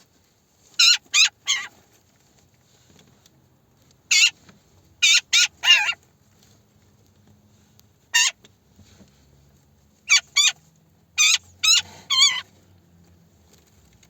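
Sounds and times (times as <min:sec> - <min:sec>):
magpies harsh calls: 0:00.8 - 0:01.7, 0:04.1 - 0:04.4, 0:05.0 - 0:06.0, 0:08.2 - 0:08.4, 0:10.1 - 0:10.6, 0:11.2 - 0:12.5.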